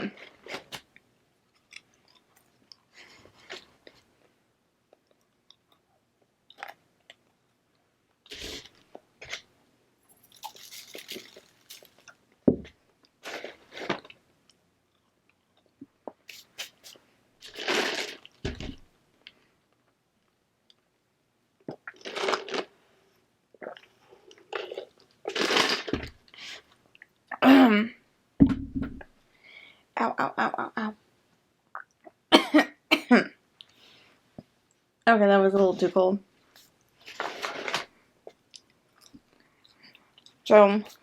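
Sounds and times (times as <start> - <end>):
crunching and chewing: 10.1 - 12.2, 21.8 - 22.7.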